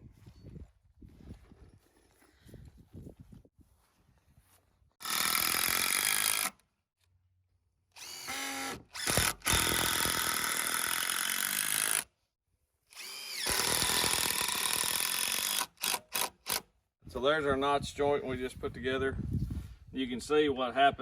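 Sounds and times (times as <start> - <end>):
power drill driving screws: 5.0 - 6.6, 7.9 - 12.1, 12.9 - 16.7.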